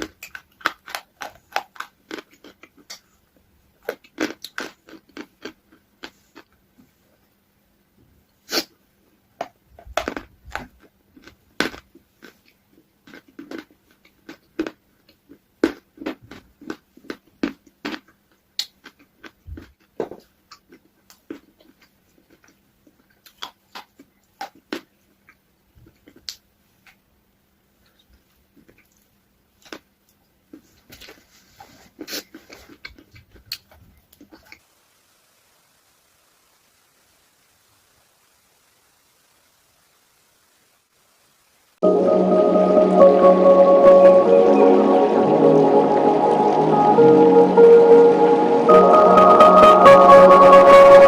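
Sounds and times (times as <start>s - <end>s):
person eating ice cream: 0.0s - 6.7s, 9.8s - 19.9s.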